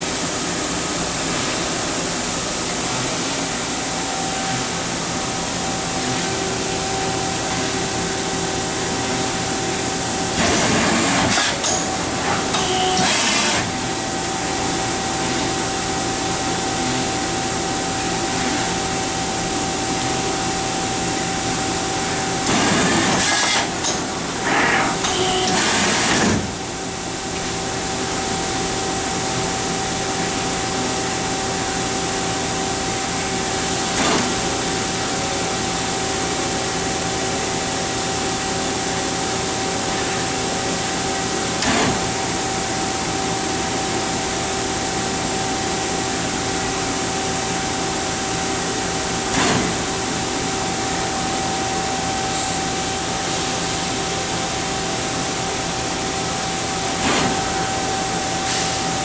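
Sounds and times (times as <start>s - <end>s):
lathe running with hiss: 0.0s - 59.0s
short loud machine bursts: 24.4s - 26.6s.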